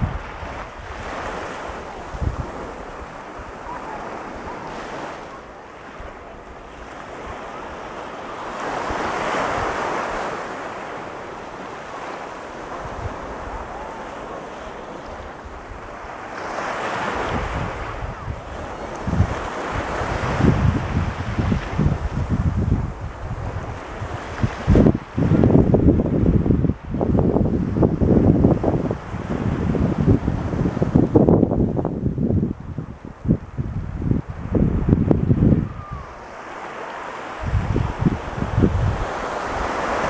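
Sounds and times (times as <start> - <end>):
wind buffeting microphone: 0.0 - 36.6, 37.2 - 40.0
ocean surf breaking on sand: 0.0 - 40.0.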